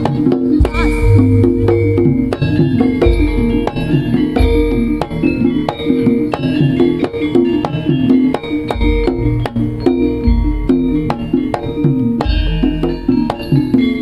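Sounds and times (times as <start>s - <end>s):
deep gong booms: 0.6s - 3.8s
kendang drum strokes: 0.6s - 5.0s
struck metal melody: 0.6s - 5.4s.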